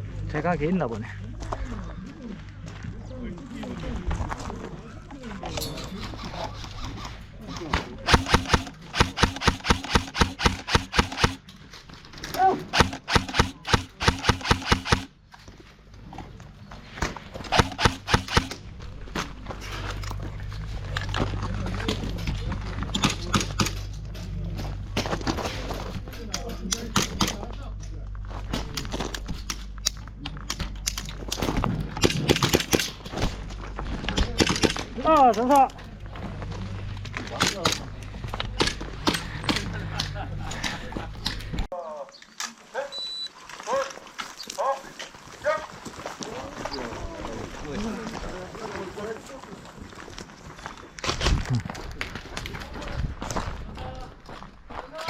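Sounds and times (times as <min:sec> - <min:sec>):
airsoft gun shots: 0:08.1 - 0:11.4, 0:12.7 - 0:15.1, 0:17.5 - 0:18.6.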